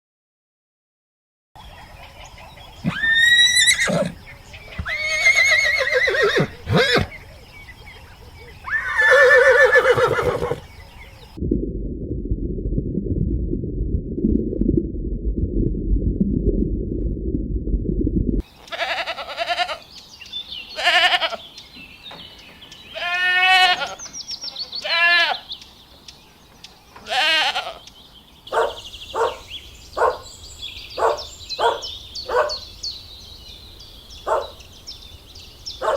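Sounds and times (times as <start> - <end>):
animal calls: 2.0 - 11.3, 28.5 - 30.2, 31.0 - 32.7, 34.2 - 34.6
low rumbling noise: 10.7 - 18.4.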